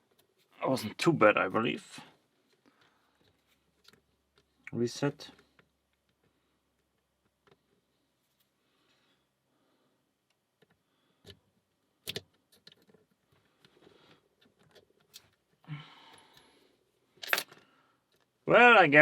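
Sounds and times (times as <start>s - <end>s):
lock picks clicking: 12.0s - 13.0s, 17.2s - 18.2s.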